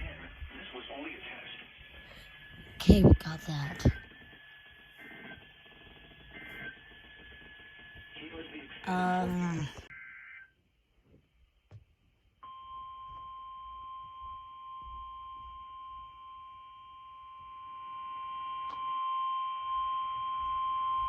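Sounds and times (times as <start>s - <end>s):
faint radio hiss: 0.0s - 9.9s
steady warning alarm tone: 2.0s - 10.6s, 12.4s - 21.0s.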